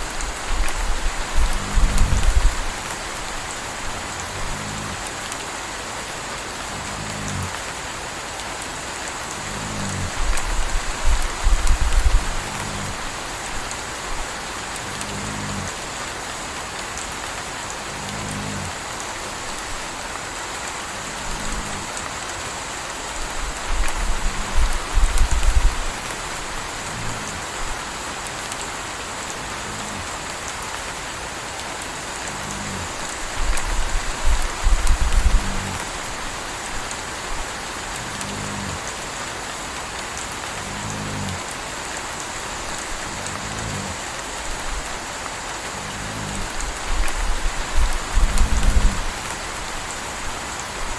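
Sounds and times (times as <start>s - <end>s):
deeper rumble: 0.0s - 5.3s, 45.7s - 49.6s
steady rain: 0.0s - 50.9s
puppy snoring: 0.1s - 5.4s, 6.6s - 7.6s, 9.3s - 15.8s, 17.9s - 18.8s, 20.9s - 22.0s, 23.2s - 27.9s, 29.4s - 30.2s, 32.2s - 36.6s, 37.9s - 39.0s, 40.5s - 41.5s, 42.6s - 44.9s, 45.6s - 49.4s.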